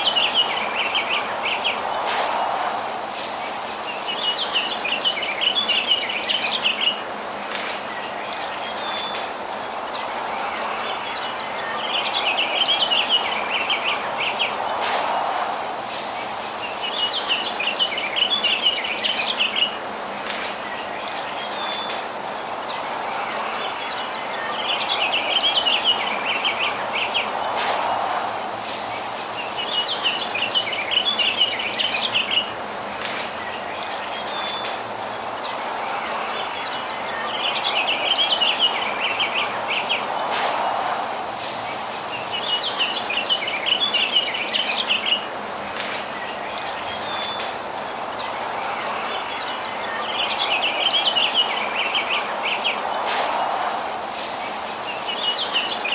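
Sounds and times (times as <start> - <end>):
steady background hiss: 0.0 - 55.9.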